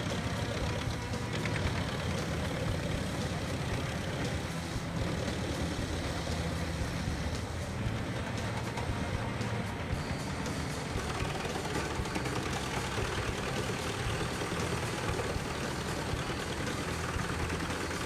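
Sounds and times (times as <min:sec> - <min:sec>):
wood chipper running: 0:00.0 - 0:18.0.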